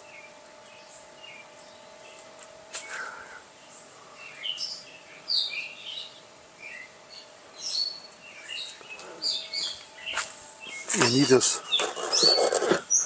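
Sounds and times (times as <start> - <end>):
birds chirping and whistling: 0.0 - 13.0
faint steady hum: 0.0 - 13.0.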